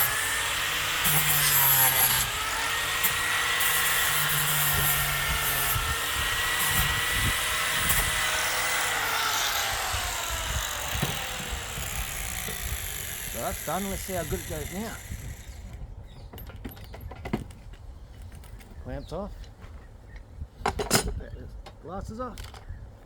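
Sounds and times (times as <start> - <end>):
power tool motor whining: 0.0 - 15.8.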